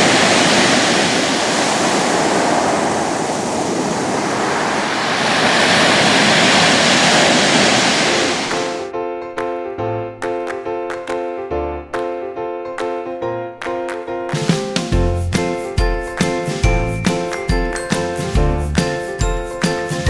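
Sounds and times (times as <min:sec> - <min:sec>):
wind buffeting microphone: 0:00.0 - 0:08.8
sea surf rushing: 0:00.0 - 0:08.9.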